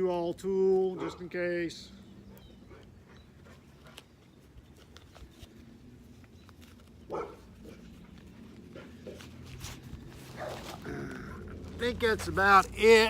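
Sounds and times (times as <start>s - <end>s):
dog bark: 1.0s - 1.3s, 7.1s - 7.8s, 10.4s - 10.6s.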